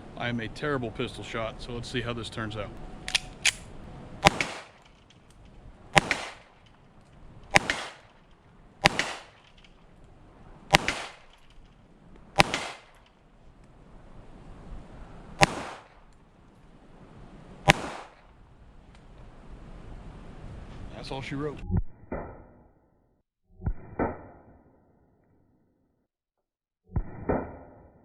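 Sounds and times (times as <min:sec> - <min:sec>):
pistol shots: 0:03.0 - 0:05.0, 0:05.9 - 0:06.7, 0:07.5 - 0:08.2, 0:08.8 - 0:09.8, 0:10.7 - 0:11.6, 0:12.4 - 0:13.1, 0:15.4 - 0:16.0, 0:17.7 - 0:18.3.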